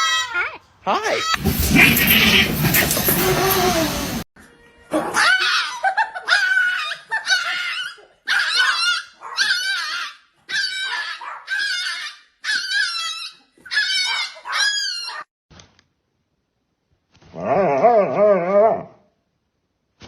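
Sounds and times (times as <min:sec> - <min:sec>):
dog crying high-pitched: 0:00.0 - 0:04.2, 0:04.9 - 0:15.3.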